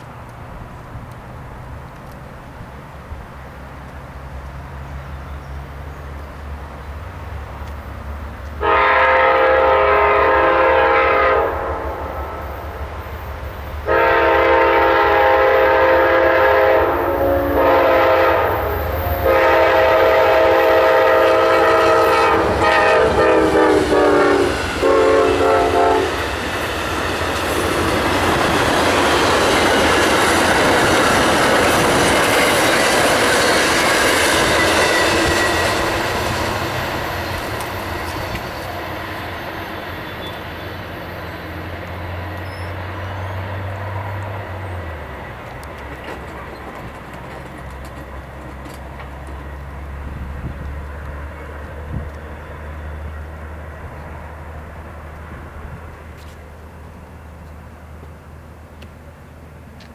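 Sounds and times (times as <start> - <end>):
multi-chime train air horn: 8.6 - 12.9, 13.8 - 26.2
train wheels clattering over rails: 17.5 - 53.0.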